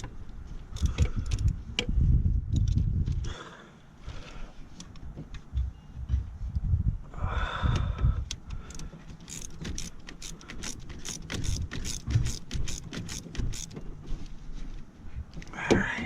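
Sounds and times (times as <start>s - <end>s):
ratchet wrench clicking: 0.7s - 1.6s, 8.3s - 13.8s
tools knocking against engine: 8.5s - 13.9s.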